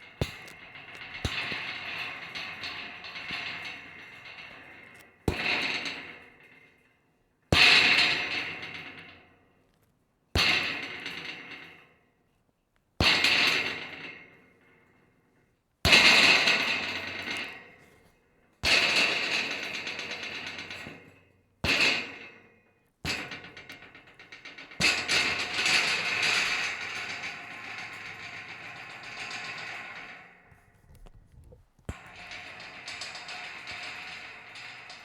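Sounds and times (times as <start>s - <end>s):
scrap metal rattling: 0.0s - 5.8s.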